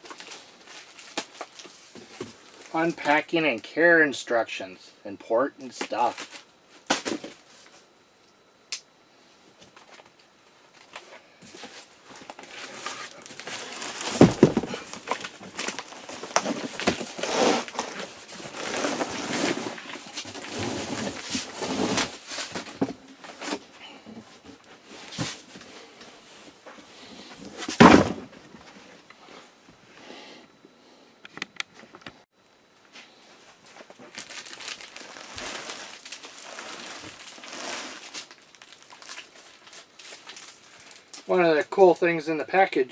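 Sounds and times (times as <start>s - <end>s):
cardboard and plastic rustling: 0.0s - 3.1s, 5.8s - 7.9s, 9.6s - 29.1s, 33.1s - 41.4s.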